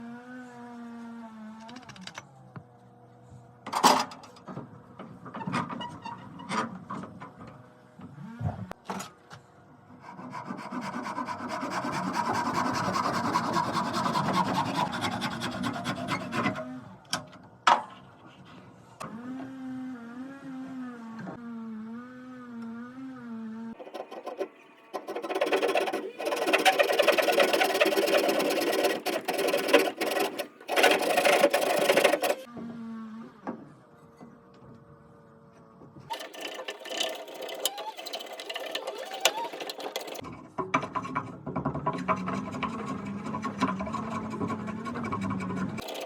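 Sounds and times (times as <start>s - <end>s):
rasping on wood: 10.0s - 16.6s, 23.8s - 32.5s, 36.1s - 40.2s, 41.7s - 46.0s.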